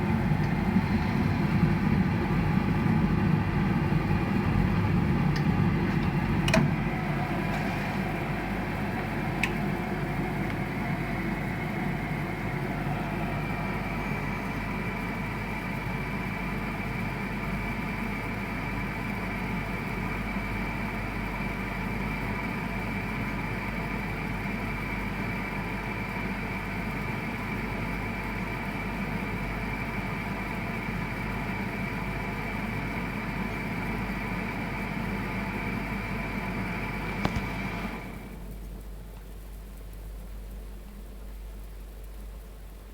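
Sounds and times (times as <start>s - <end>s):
gas boiler hum and hiss: 0.0s - 42.9s.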